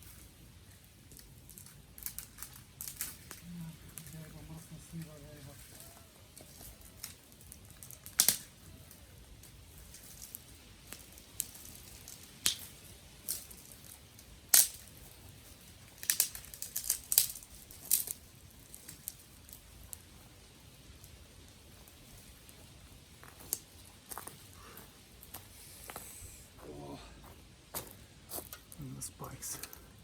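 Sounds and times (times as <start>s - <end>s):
dry wood cracking and snapping: 0.1s - 24.5s.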